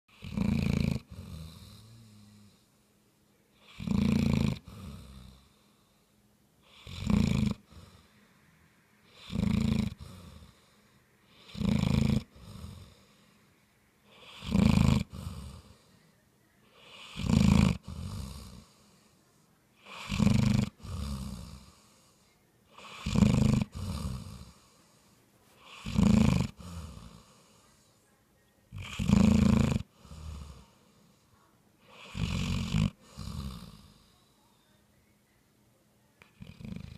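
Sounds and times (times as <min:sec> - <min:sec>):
dog snoring loudly: 0:00.1 - 0:02.6, 0:03.6 - 0:05.7, 0:06.6 - 0:08.1, 0:09.0 - 0:13.3, 0:14.0 - 0:15.9, 0:16.7 - 0:18.9, 0:19.8 - 0:22.1, 0:22.7 - 0:24.8, 0:25.6 - 0:27.6, 0:28.7 - 0:30.9, 0:31.8 - 0:34.1, 0:36.4 - 0:36.9.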